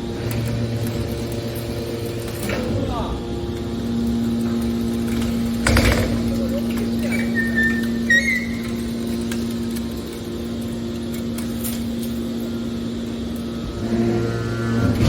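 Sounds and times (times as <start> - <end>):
baler motor and pump humming: 0.0 - 15.0.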